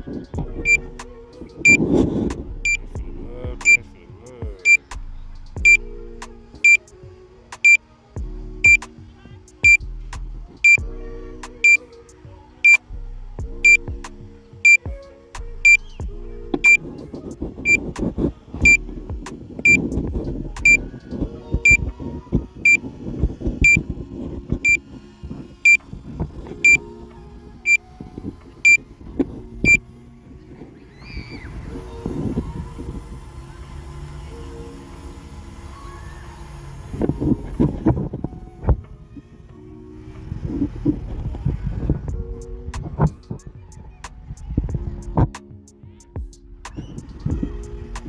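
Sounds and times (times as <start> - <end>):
remote controller beeping: 6.6 - 6.8, 14.6 - 14.8, 19.6 - 19.9, 24.5 - 27.0, 27.7 - 27.9, 28.6 - 28.9, 29.6 - 30.0.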